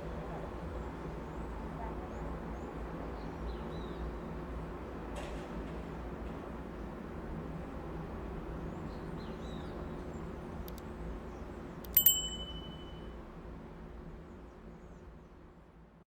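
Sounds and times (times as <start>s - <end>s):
city traffic hum: 5.4s - 13.1s
bright metallic ding: 11.9s - 13.1s.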